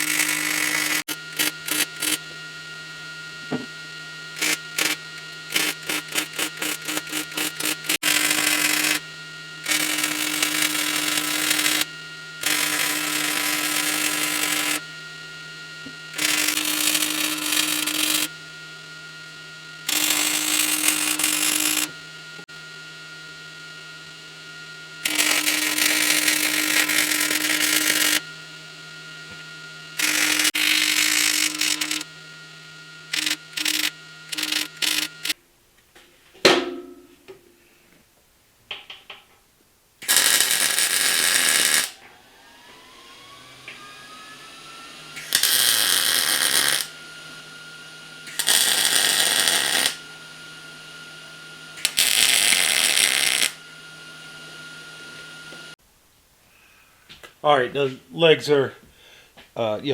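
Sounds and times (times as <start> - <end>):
welder hum: 0.0 - 35.4, 40.0 - 55.8
welder arc crackling: 4.4 - 9.0, 30.0 - 32.1, 33.1 - 35.4, 40.0 - 42.0, 45.2 - 46.9, 48.3 - 50.0, 51.8 - 53.6.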